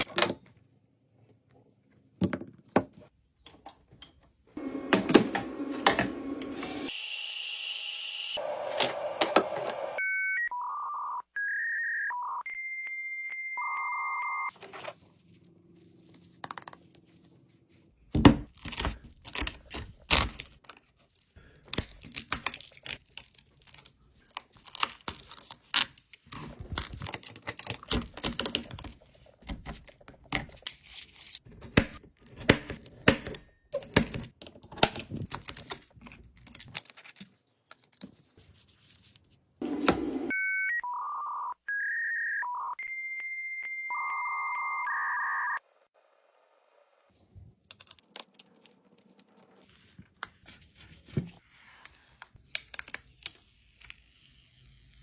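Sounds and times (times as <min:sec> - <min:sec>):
electronic beeping tones: 0:10.0 - 0:14.5, 0:40.3 - 0:45.6
adhesive film peeling: 0:21.7 - 0:28.8.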